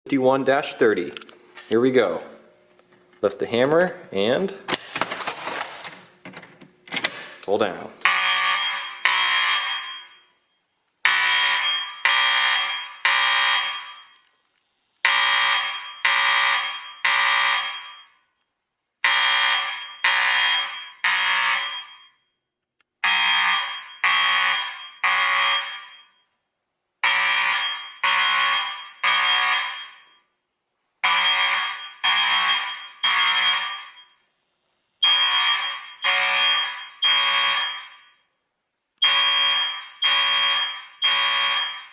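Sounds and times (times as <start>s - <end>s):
fire alarm blasts: 8.0s - 14.3s, 15.0s - 18.4s, 19.0s - 22.4s, 23.0s - 26.4s, 27.0s - 30.4s, 31.0s - 34.3s, 35.0s - 38.4s, 39.0s - 41.9s.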